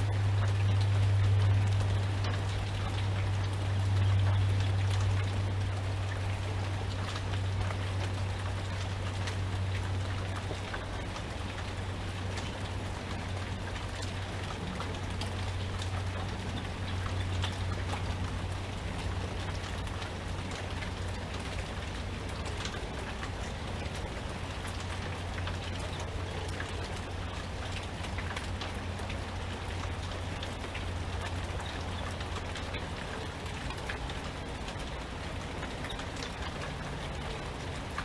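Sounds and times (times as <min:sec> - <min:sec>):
low hum: 0:00.0 - 0:12.4
rain falling: 0:00.0 - 0:38.0
raindrops ticking on hard surface: 0:00.0 - 0:38.0.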